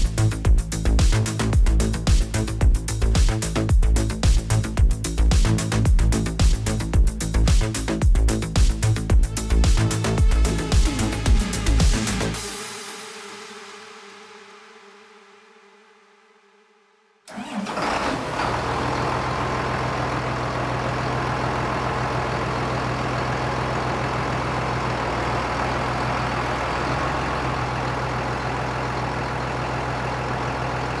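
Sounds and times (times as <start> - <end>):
music: 0.0 - 17.2
engine starting and idling: 17.3 - 31.0.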